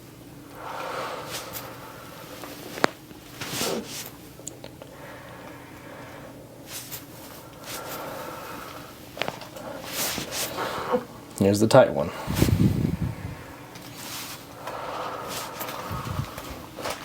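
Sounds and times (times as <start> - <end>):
rustling and swishing: 1.2 - 4.2, 6.7 - 8.1, 9.2 - 10.8, 12.2 - 14.6.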